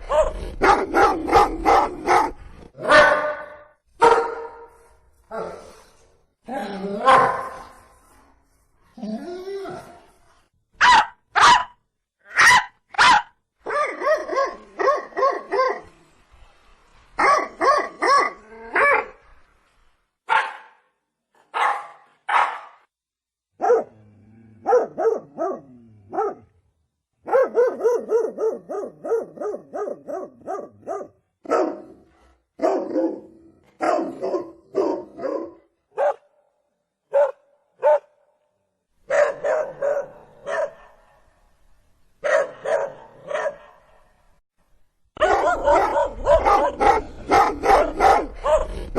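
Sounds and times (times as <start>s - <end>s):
dog barking: 0.0s - 4.7s, 7.0s - 7.7s, 10.8s - 15.9s, 17.2s - 19.1s, 20.3s - 20.8s, 21.5s - 22.8s, 23.6s - 24.0s, 24.6s - 26.5s, 27.2s - 32.0s, 32.6s - 36.3s, 37.1s - 38.2s, 39.1s - 41.3s, 42.2s - 44.1s, 45.2s - 48.8s.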